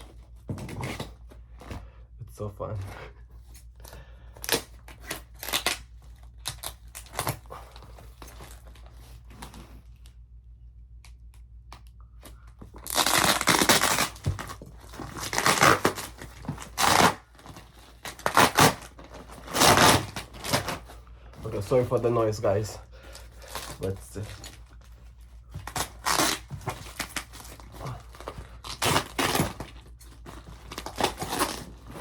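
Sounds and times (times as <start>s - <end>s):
packaging tearing and crinkling: 4.4s - 9.7s, 12.7s - 21.0s, 25.6s - 32.0s
packaging scraping and rustling: 12.6s - 32.0s.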